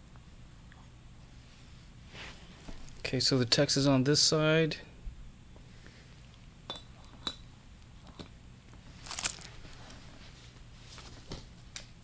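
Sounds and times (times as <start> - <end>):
faint steady hum: 0.0 - 12.0
small metal parts clinking: 9.0 - 10.0.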